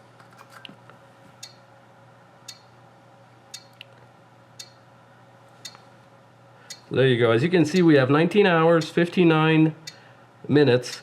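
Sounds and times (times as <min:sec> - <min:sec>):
buzzer ticks: 0:02.5 - 0:02.7, 0:04.6 - 0:04.8.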